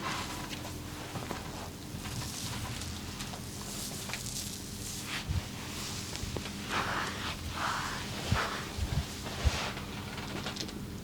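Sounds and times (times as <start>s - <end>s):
hands rubbing skin: 3.6s - 9.8s.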